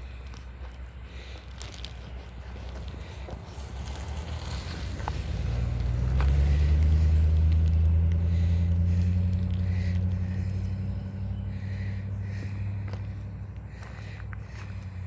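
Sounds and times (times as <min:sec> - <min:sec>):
vehicle driving past: 0:03.0 - 0:15.0.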